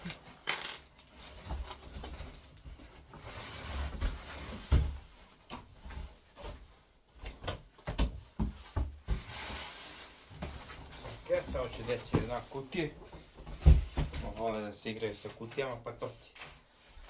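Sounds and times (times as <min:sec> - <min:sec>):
cardboard box rustling and scraping: 0:01.2 - 0:06.7, 0:08.5 - 0:14.4.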